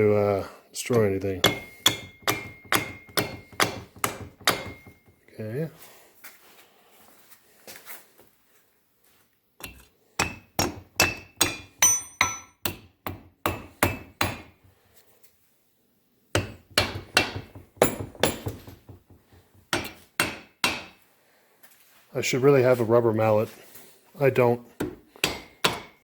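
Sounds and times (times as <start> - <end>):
hammer striking metal: 0.9 - 5.2, 9.6 - 14.5, 16.4 - 21.0, 24.8 - 26.0.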